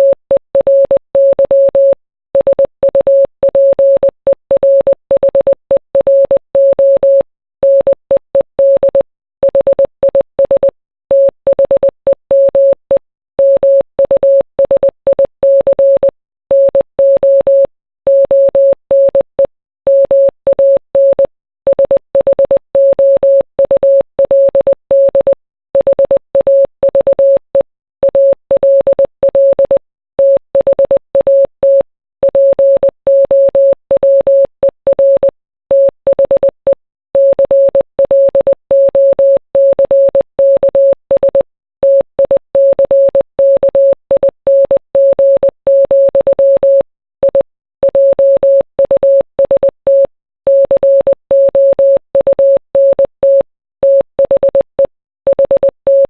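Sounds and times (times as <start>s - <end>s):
morse code beeps: 19.9s - 56.0s.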